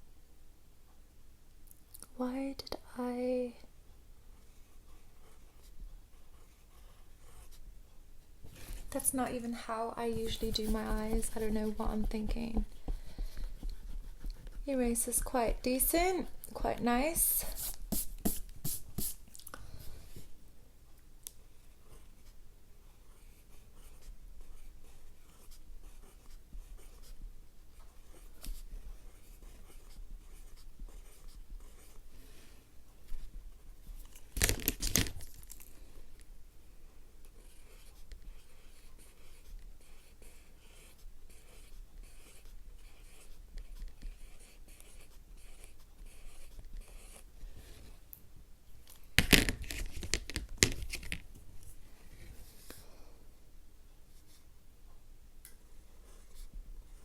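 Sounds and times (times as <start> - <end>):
pencil scratching on paper: 4.4 - 7.6, 10.0 - 16.4, 17.0 - 19.2, 21.6 - 32.4, 37.2 - 48.0.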